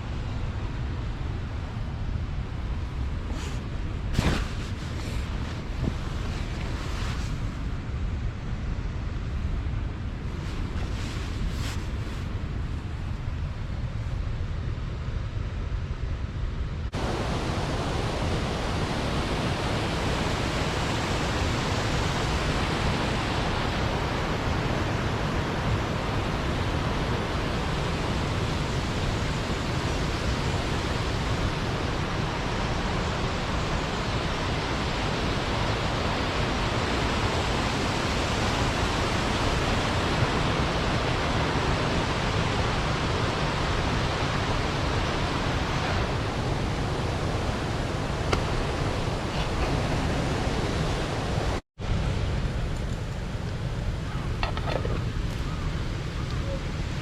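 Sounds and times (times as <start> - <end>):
river water pouring over weir: 17.0 - 57.0.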